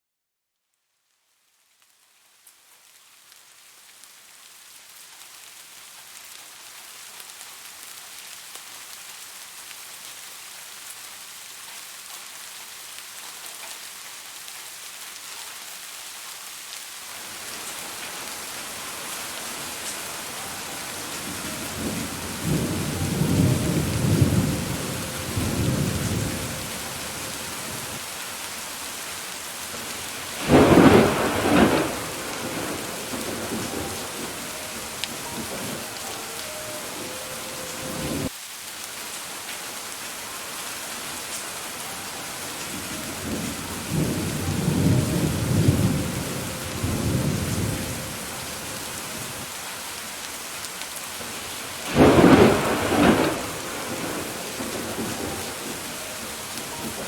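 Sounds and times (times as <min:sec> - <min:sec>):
steady rain hiss: 0:00.6 - 0:57.0
thunder rumbling: 0:17.5 - 0:28.0, 0:29.8 - 0:38.3, 0:42.7 - 0:49.4, 0:51.8 - 0:57.0
loud thunderclap: 0:21.2 - 0:26.7, 0:30.4 - 0:34.4, 0:43.3 - 0:48.0, 0:51.9 - 0:55.8.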